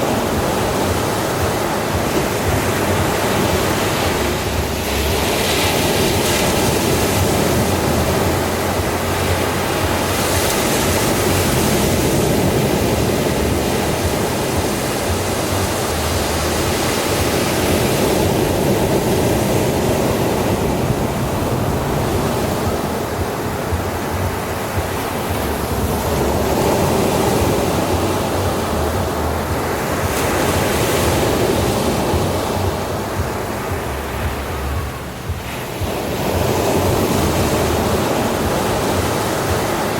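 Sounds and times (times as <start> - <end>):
ocean waves breaking on beach: 0.0 - 39.9.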